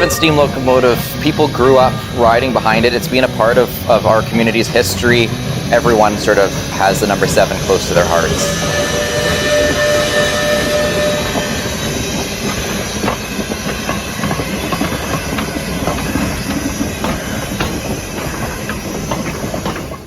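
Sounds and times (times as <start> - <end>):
high steady tone: 0.0 - 13.5
steam train rolling: 0.0 - 20.0
wheels clicking over rail joints: 0.0 - 20.0.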